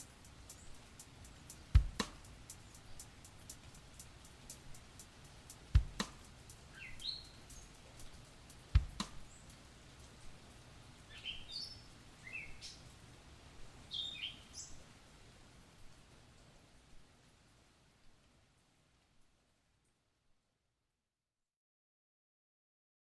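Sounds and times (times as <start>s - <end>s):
small birds chirping: 0.0s - 10.0s, 11.0s - 12.9s.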